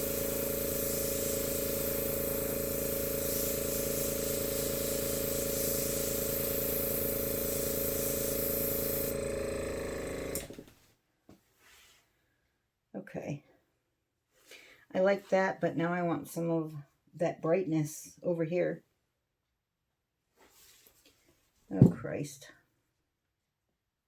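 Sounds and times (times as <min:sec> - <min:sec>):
electric air blower motor hum: 0:00.0 - 0:10.6.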